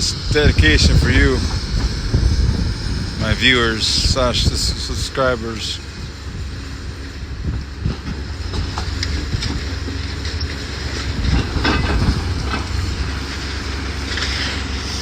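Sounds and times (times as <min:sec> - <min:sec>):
demolition machinery rumbling: 0:00.0 - 0:15.0
clanks and knocks: 0:07.9 - 0:12.8.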